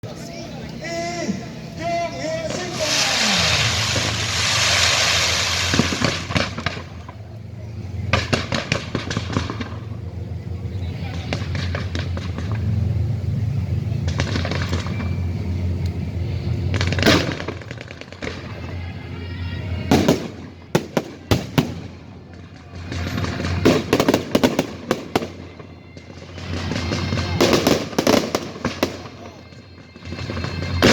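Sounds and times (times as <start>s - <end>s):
fireworks hissing rush: 1.1s - 7.2s, 16.4s - 30.9s
fireworks crackling pops: 2.3s - 7.3s, 7.9s - 10.0s, 10.8s - 13.0s, 13.8s - 18.9s, 19.8s - 30.9s
background music: 18.9s - 30.9s.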